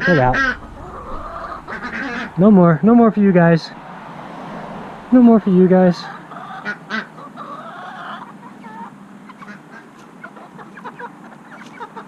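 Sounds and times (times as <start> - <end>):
bird squawking call: 0.0 - 2.4
chickens clucking and chirping: 0.0 - 2.5, 5.8 - 12.0.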